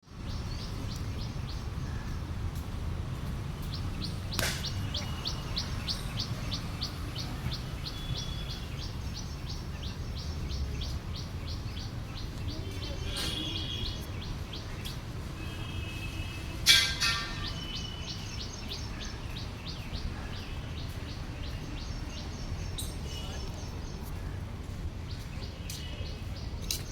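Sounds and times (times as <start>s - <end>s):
bird chirping: 3.2s - 15.0s, 16.7s - 24.1s
sharp click: 4.3s - 4.8s.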